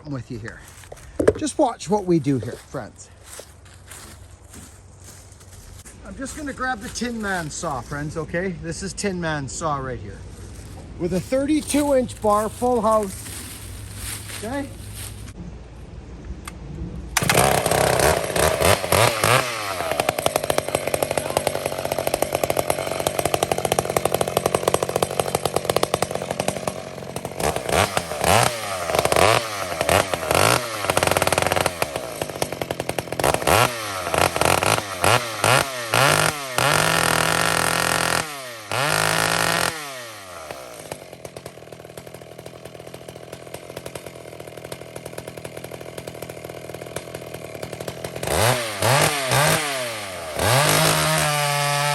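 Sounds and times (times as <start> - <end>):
chainsaw revving: 0.6 - 4.1, 5.8 - 15.3, 17.2 - 51.9.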